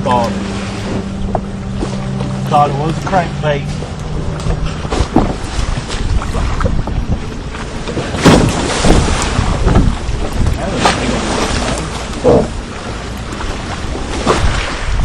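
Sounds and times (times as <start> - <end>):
wind buffeting the microphone: 3.5 - 15.0.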